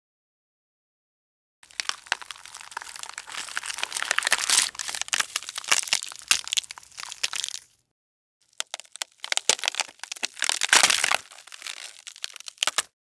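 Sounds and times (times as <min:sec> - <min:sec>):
meat crushing and tearing: 0:01.6 - 0:07.7, 0:08.5 - 0:13.0.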